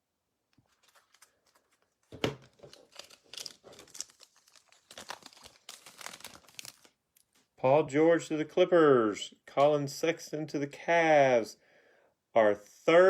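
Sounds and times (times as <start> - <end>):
wrapper torn and crinkled: 2.5 - 7.0.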